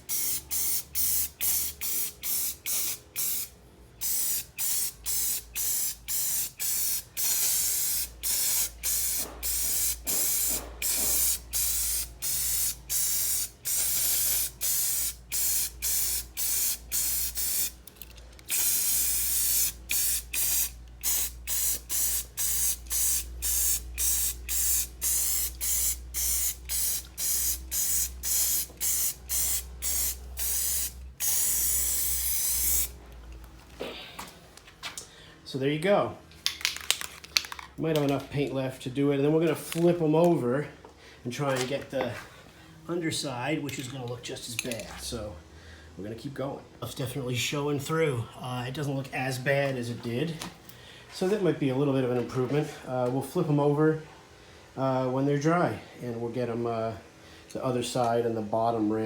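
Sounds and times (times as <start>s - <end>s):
spray paint can hissing: 0.0s - 33.0s.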